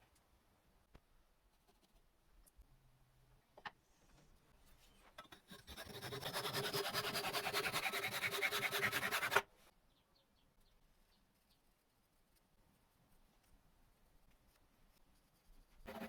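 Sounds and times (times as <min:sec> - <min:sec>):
hand tool scratching wood: 0:05.3 - 0:09.4.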